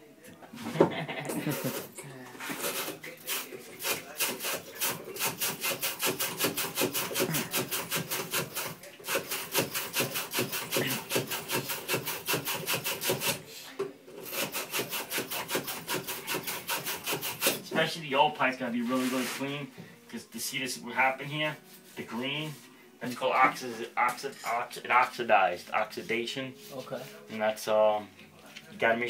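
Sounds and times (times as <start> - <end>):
abrasive scrubbing on copper pipe: 1.4 - 13.4, 14.2 - 17.7.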